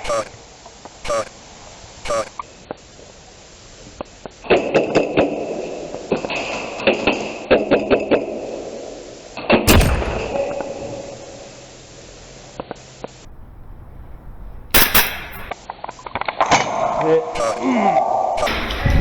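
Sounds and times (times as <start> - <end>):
loud bang with rumble: 9.7 - 11.6, 13.2 - 15.6, 18.5 - 19.0
sharp gunshots: 9.7 - 11.6, 13.2 - 15.6.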